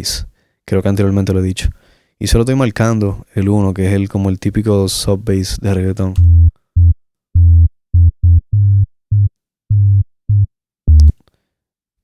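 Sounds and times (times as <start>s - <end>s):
deep sub-bass synth notes: 6.2s - 11.1s.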